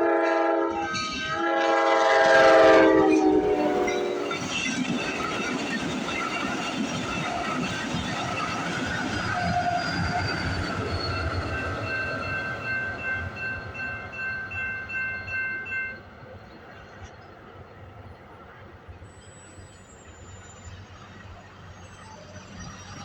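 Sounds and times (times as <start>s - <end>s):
crossing warning bell ringing: 0.0s - 16.7s
train wheels rumbling: 0.0s - 23.0s.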